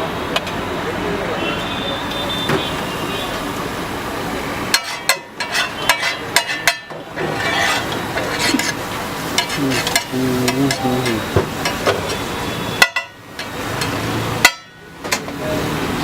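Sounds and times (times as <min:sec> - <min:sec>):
street stall noise: 0:00.0 - 0:16.0
metal spatula clinking on griddle: 0:04.7 - 0:12.0, 0:12.8 - 0:15.3.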